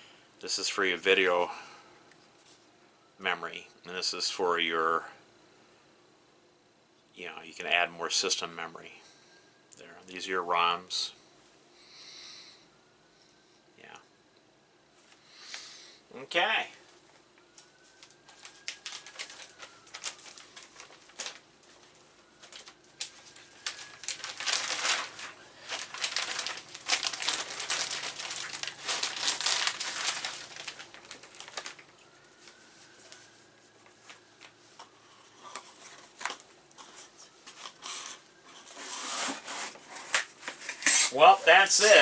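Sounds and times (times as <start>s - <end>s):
plastic bag crinkling: 17.4s - 39.1s.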